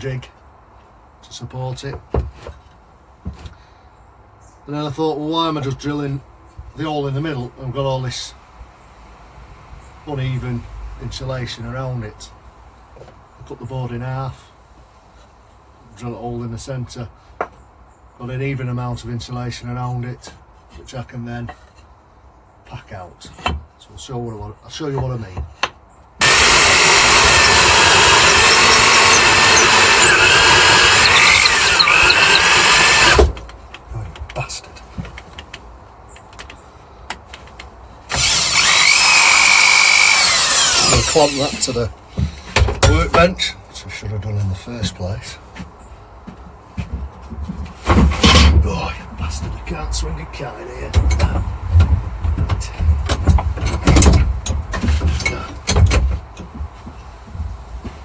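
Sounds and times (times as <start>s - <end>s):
knocks clunks and clicks: 24.9s - 43.3s, 45.6s - 49.8s, 50.8s - 58.0s
electric drill whining: 26.2s - 33.4s, 38.1s - 41.8s.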